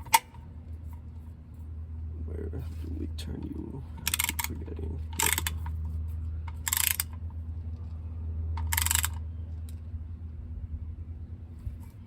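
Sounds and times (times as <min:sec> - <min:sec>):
steady low hum: 0:00.0 - 0:12.0
ratchet wrench clicking: 0:04.0 - 0:04.6, 0:05.2 - 0:05.6, 0:06.5 - 0:07.2, 0:08.6 - 0:09.2.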